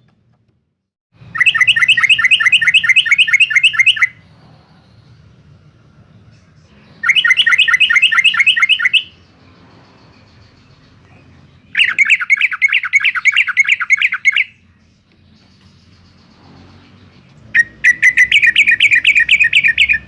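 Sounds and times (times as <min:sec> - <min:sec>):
bird singing bubbling notes: 0:01.3 - 0:04.2, 0:07.0 - 0:09.3, 0:11.6 - 0:14.6, 0:17.5 - 0:20.0.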